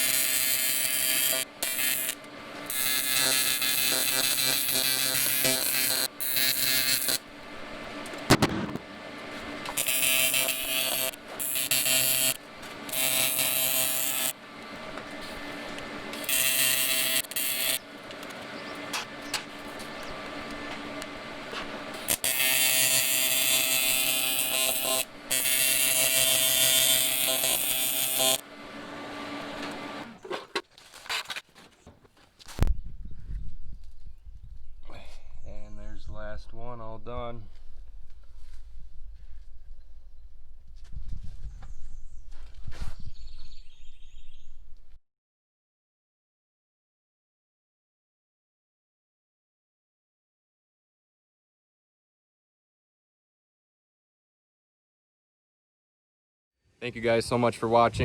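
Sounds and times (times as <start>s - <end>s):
welding arc buzzing: 0.0s - 30.2s
welding machine hum: 0.0s - 30.2s.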